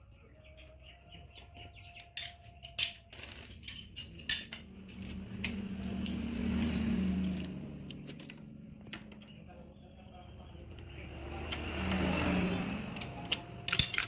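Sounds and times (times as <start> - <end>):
metal tools clinking and clanking: 1.9 - 9.8, 10.8 - 14.0.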